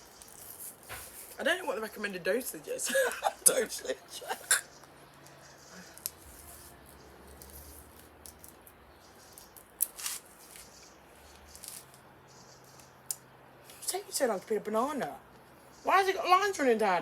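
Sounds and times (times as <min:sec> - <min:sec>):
banana peel tearing: 0:09.3 - 0:10.7.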